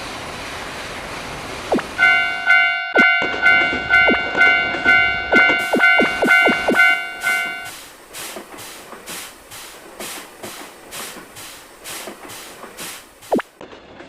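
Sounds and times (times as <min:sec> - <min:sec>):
train clickety-clack over rails: 0:00.0 - 0:14.0
level-crossing alarm bell ringing: 0:01.9 - 0:07.8.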